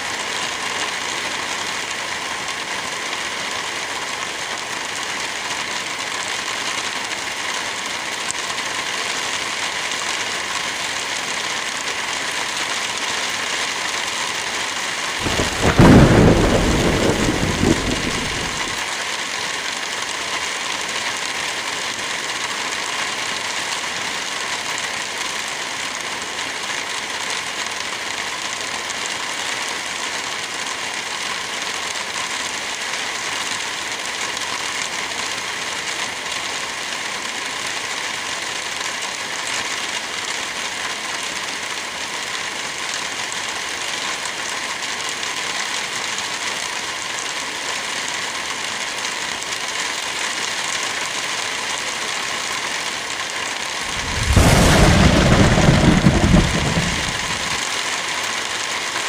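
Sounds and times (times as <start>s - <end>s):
heavy rain falling: 0.0s - 59.0s
thunder clap rumbling: 15.2s - 18.8s, 53.9s - 57.6s.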